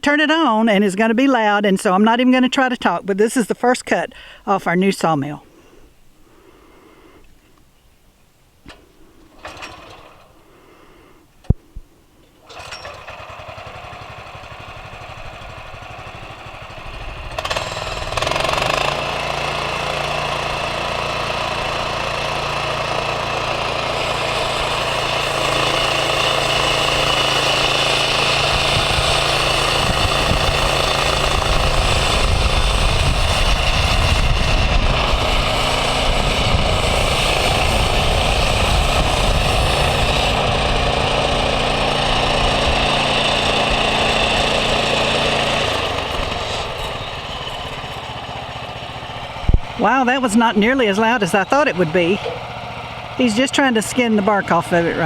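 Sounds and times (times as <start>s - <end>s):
sawmill engine running: 9.2s - 10.6s, 12.4s - 55.0s
band blade cutting log: 17.4s - 48.2s.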